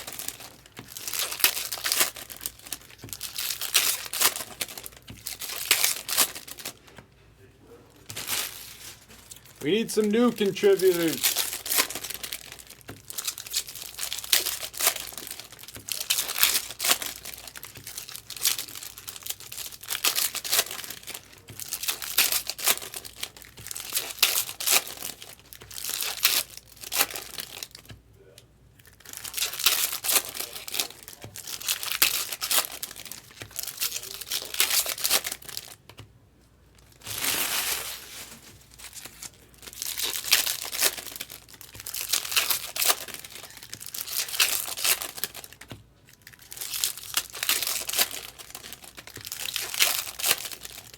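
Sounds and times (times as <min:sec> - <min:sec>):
foil wrappers tearing and crinkling: 0:00.0 - 0:07.0, 0:08.0 - 0:27.9, 0:28.8 - 0:36.0, 0:36.8 - 0:50.9
cards shuffling: 0:08.1 - 0:17.1.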